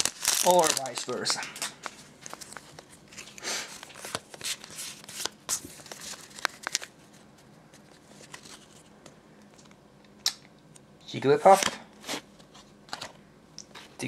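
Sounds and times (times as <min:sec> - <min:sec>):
foil wrapper crinkling: 0:00.0 - 0:07.2
cards being handled: 0:00.0 - 0:09.8.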